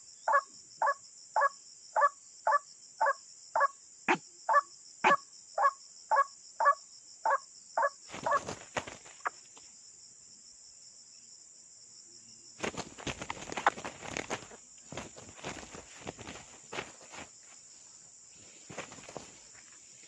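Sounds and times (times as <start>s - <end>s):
insects trilling: 0.0s - 20.0s
rustling in vegetation: 8.1s - 9.8s, 12.6s - 20.0s.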